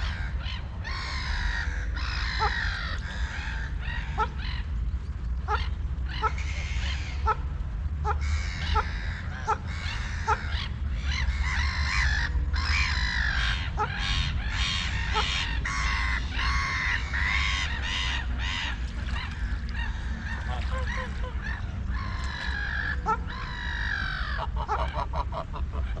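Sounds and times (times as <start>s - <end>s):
steady low rumble: 0.0s - 26.0s
waterfowl honking: 5.4s - 26.0s.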